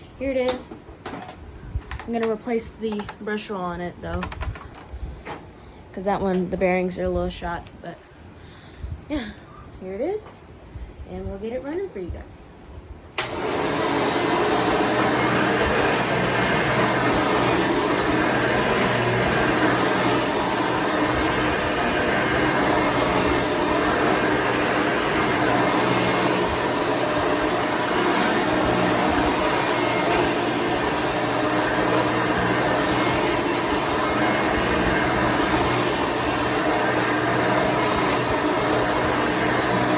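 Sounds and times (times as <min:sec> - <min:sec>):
vacuum cleaner running: 0:13.2 - 0:39.9.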